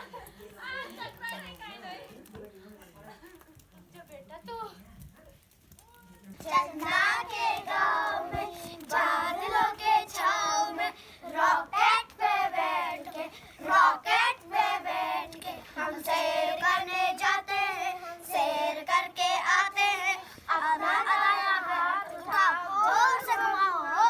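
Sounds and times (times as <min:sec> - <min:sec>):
children singing: 0:06.5 - 0:24.0.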